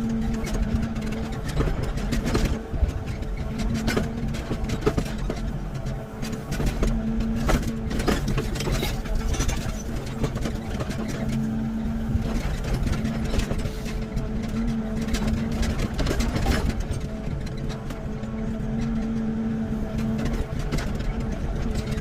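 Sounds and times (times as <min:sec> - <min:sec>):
excavator diesel engine droning: 0:00.0 - 0:22.0.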